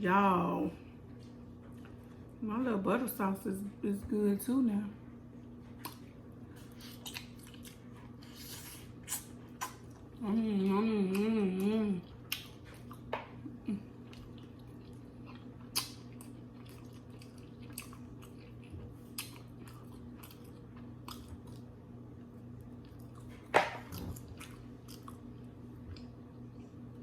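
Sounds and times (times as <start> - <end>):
wet chewing and lip smacks: 5.5 - 10.2, 12.0 - 13.1, 14.0 - 21.7, 22.6 - 26.8
person humming: 10.2 - 12.0.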